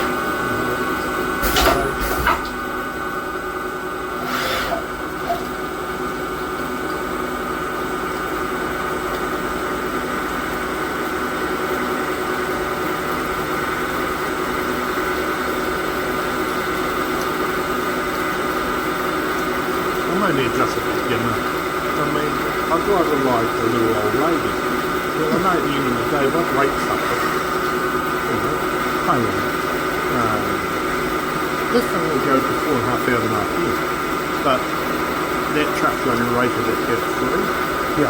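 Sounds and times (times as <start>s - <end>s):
lathe whining: 13.3s - 38.0s.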